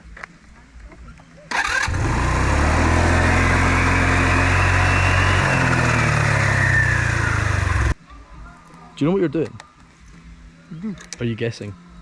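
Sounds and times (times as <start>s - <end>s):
small motorbike engine running: 1.6s - 8.0s.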